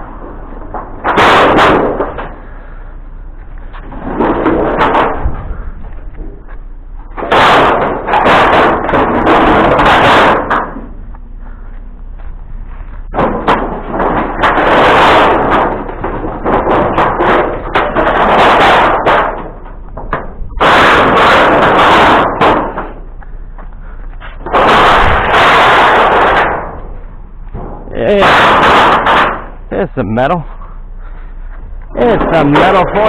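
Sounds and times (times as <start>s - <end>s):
loud rattling clatter and thumps: 0.0s - 33.0s.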